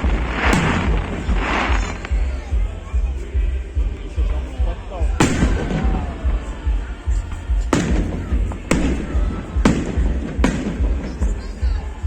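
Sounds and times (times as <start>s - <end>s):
firework bangs: 0.0s - 2.7s, 5.1s - 12.0s
low rumble: 0.0s - 12.0s.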